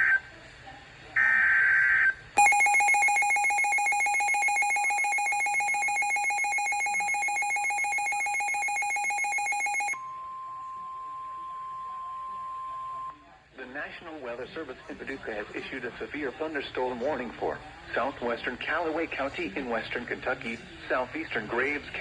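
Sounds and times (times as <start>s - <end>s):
rapidly pulsing alert alarm: 2.4s - 10.0s
warbling data tones: 2.4s - 10.0s
steady single-pitched warning tone: 2.4s - 13.1s.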